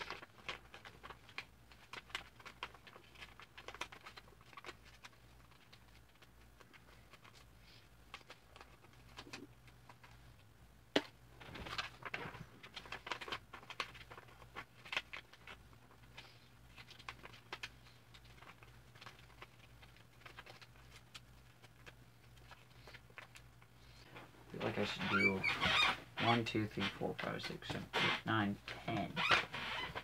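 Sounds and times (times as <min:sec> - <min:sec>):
paper crinkling and folding: 0:00.0 - 0:30.0.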